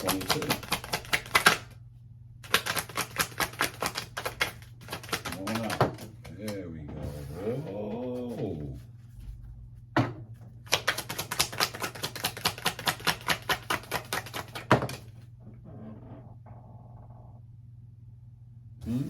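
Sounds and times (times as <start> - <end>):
cards clicking while shuffled: 0.0 - 1.7, 2.4 - 6.5, 10.7 - 15.1.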